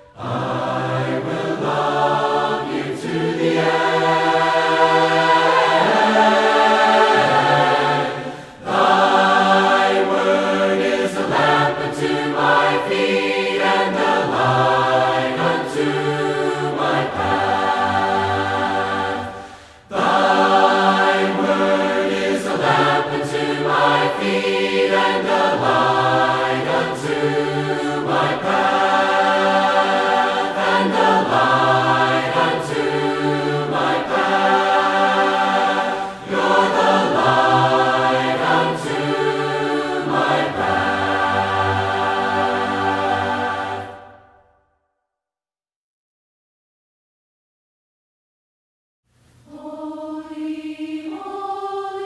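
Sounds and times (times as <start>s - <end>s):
group singing a hymn a cappella: 0.0s - 44.4s, 49.5s - 52.0s.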